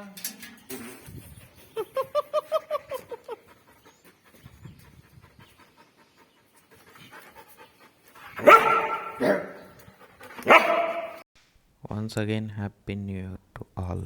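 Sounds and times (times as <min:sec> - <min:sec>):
dog panting: 0:02.9 - 0:11.2.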